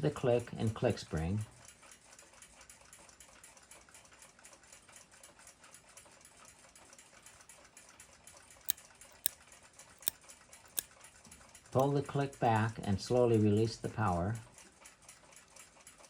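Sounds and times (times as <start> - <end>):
sharp clock clicks: 9.1 - 9.4, 10.0 - 10.9.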